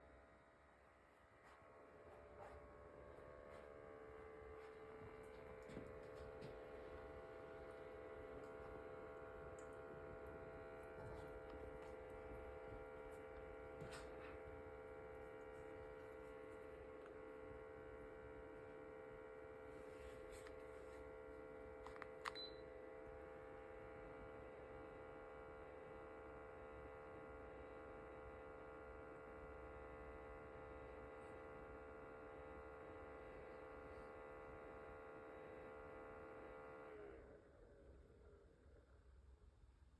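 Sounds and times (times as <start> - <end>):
humidifier humming: 3.8 - 23.0
small clicks: 21.8 - 22.5.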